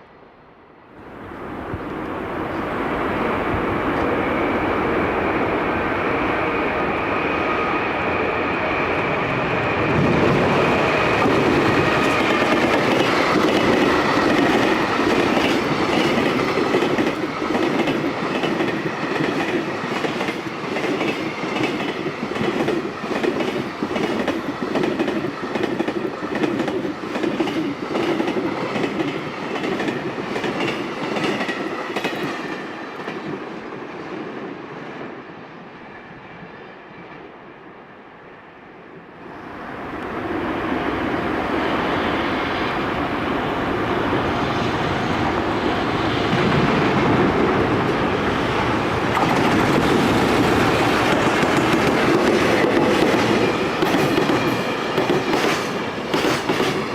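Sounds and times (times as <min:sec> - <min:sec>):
train wheels clickety-clack: 0:09.9 - 0:33.6, 0:46.0 - 0:56.9.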